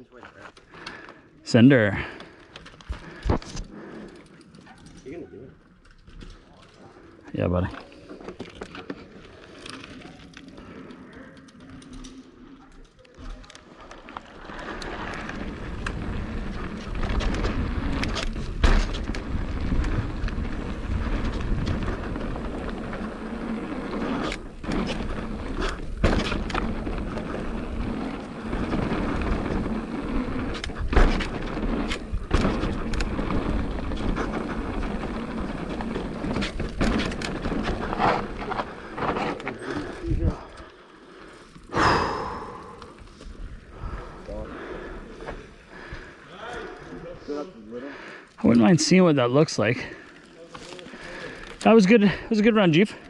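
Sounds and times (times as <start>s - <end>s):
bike rattling: 0.0s - 53.0s
wind and tyre noise: 14.0s - 40.6s, 41.3s - 46.4s.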